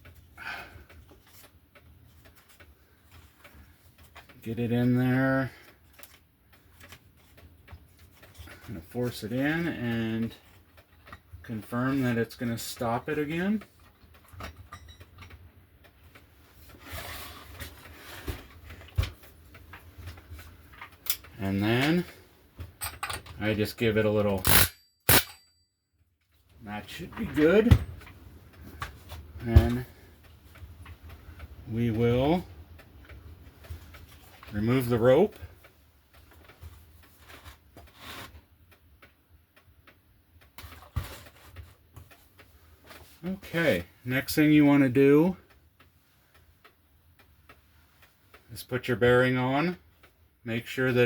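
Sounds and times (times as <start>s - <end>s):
clicks and knocks from handling parts: 0.0s - 25.4s
small metal clicks and knocks: 12.4s - 16.3s, 18.7s - 25.4s
sharp metal knock: 24.5s - 25.5s.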